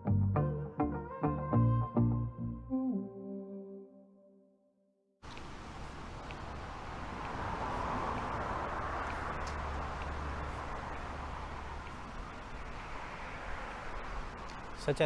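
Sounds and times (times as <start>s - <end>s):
road traffic passing: 5.2s - 15.0s
low steady rumble: 5.4s - 15.0s.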